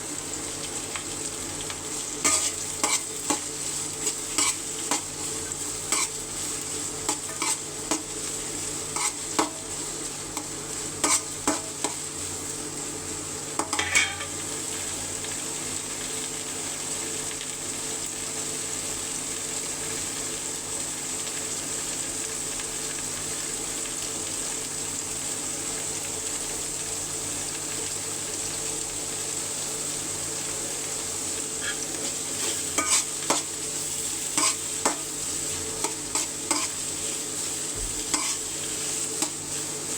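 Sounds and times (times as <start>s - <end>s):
food sizzling in oil: 0.0s - 39.9s
spoon scraping and knocking pot: 13.6s - 14.4s, 32.8s - 33.4s.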